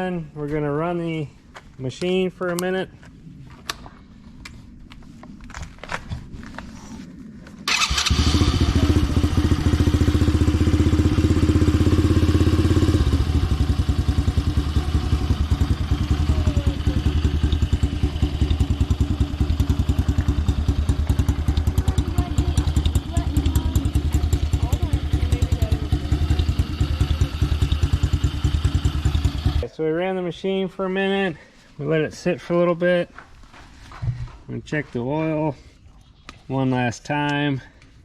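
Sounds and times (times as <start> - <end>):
atv engine idling: 7.7 - 29.7.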